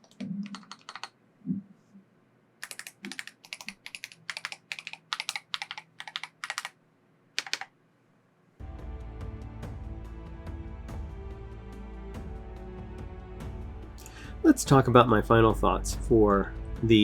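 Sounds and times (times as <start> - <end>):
keyboard typing: 0.0 - 1.2, 2.6 - 6.8, 7.4 - 7.7
music: 8.6 - 17.0.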